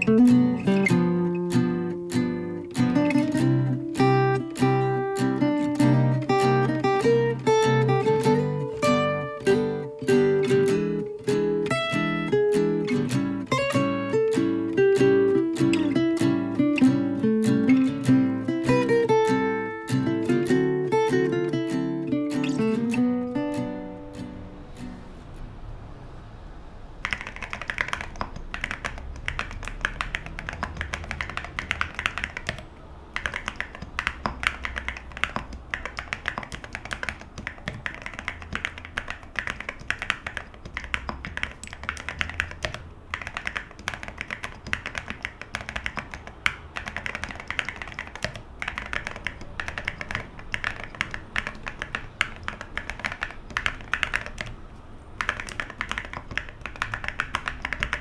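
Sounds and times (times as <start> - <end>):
mechanical keyboard typing: 0.0 - 25.1, 27.0 - 58.0.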